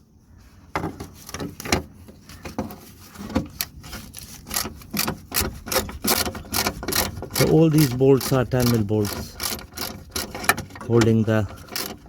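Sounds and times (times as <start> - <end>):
metal scraping on metal: 2.7 - 12.0
hand ratchet clicking: 4.4 - 12.0.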